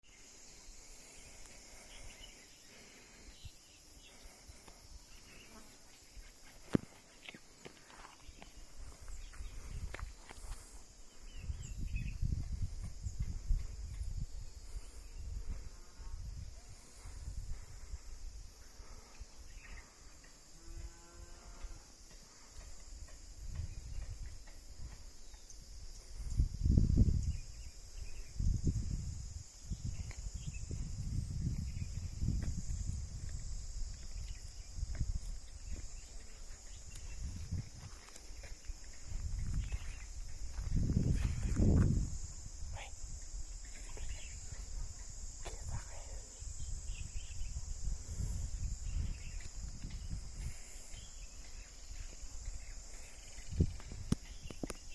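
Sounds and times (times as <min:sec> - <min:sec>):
high-pitched insect chorus: 0:00.0 - 0:54.9
wind gusting on microphone: 0:08.6 - 0:18.6, 0:22.9 - 0:54.9.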